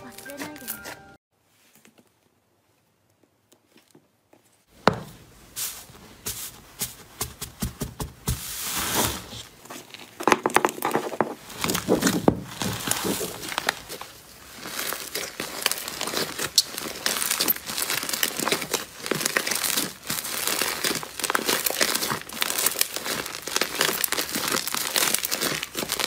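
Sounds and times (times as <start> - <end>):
slime sticky clicks and crackles: 14.7 - 26.0.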